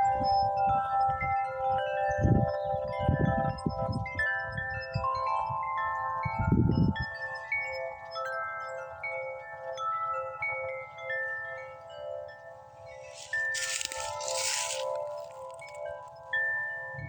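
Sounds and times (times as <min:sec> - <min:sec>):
wind chimes ringing: 0:00.0 - 0:17.0
wind rumbling on microphone: 0:06.3 - 0:07.0.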